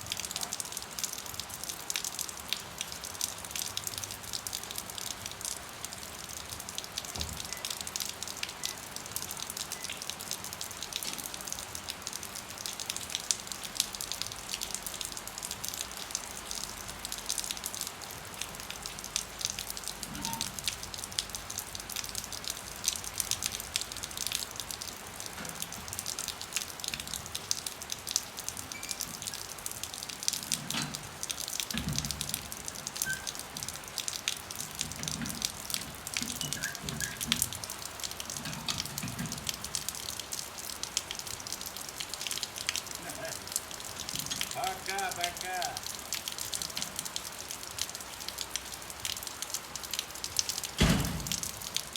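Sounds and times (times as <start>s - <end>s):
rain falling: 0.0s - 51.9s.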